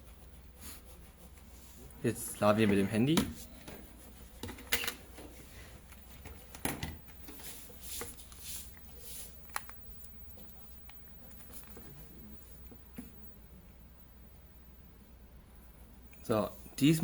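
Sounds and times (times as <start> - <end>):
soft rustling: 7.1 - 13.3.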